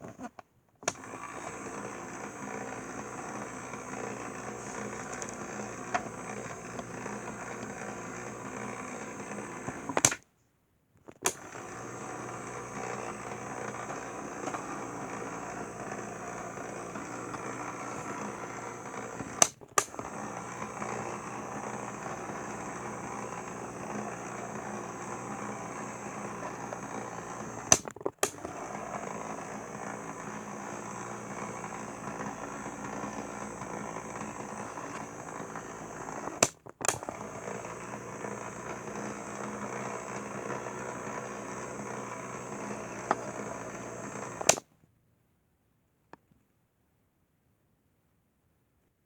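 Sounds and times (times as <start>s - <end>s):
small electric motor whirring: 0.8s - 10.2s, 11.1s - 44.6s
sharp clicks: 19.2s - 20.1s, 27.6s - 28.5s, 36.3s - 37.7s, 42.8s - 44.6s.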